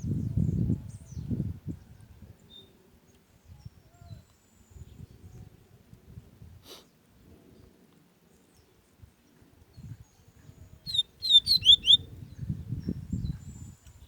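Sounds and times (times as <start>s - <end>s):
bird chirping: 10.9s - 12.0s.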